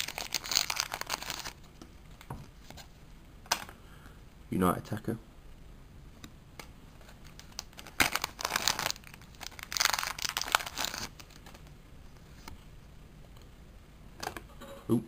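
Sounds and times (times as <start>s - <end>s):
foil wrapper tearing and crinkling: 0.0s - 1.6s, 7.2s - 11.6s.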